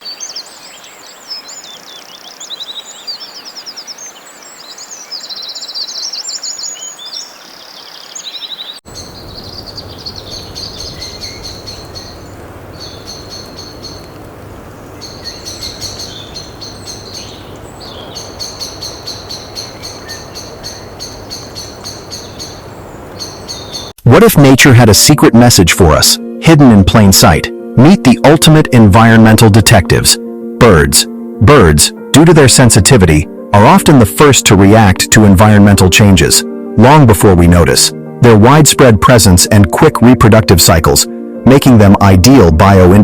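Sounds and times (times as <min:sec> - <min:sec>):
birds chirping and trilling: 0:00.0 - 0:24.0
steady background hiss: 0:08.9 - 0:23.9.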